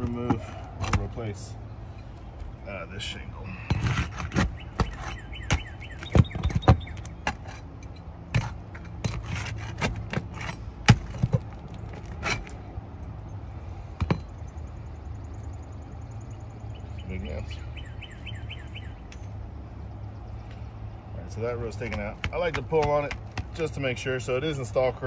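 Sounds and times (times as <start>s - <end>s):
shingles being pried up: 3.6s - 12.6s
scraping: 3.6s - 12.7s
sharp knocks and cracks: 3.8s - 7.6s, 8.3s - 12.6s, 21.8s - 23.6s.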